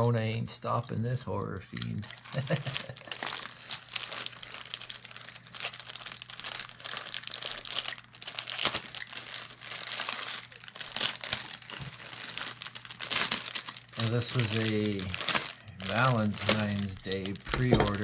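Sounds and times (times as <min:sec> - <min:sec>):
envelope packaging crinkling: 0:02.0 - 0:18.0.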